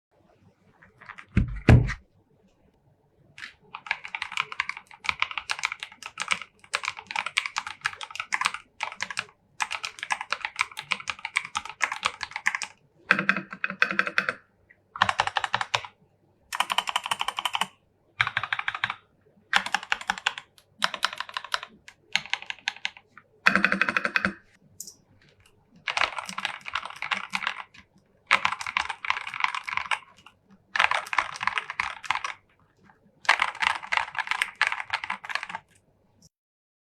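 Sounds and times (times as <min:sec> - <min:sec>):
heavy thump: 0:01.4 - 0:02.0
mechanical keyboard typing: 0:03.4 - 0:14.4, 0:15.0 - 0:35.8.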